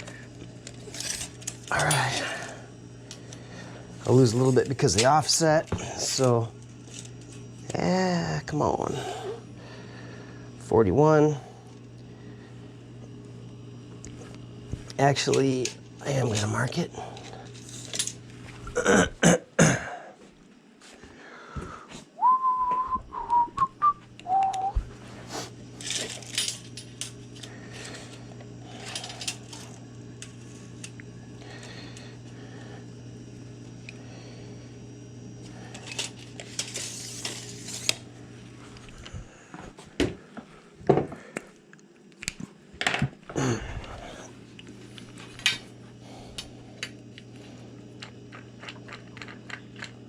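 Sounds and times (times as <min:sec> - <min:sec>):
steady low hum: 0:00.0 - 0:50.0
person whistling: 0:22.2 - 0:24.8.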